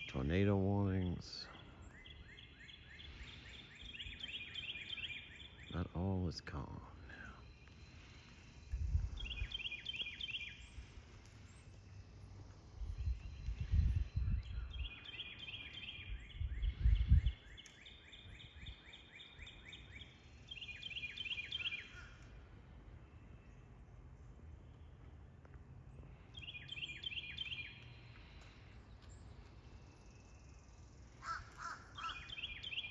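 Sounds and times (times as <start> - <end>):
songbird whistling: 1.9 - 5.7, 9.1 - 10.8, 13.1 - 22.1, 26.4 - 28.2, 32.0 - 32.9.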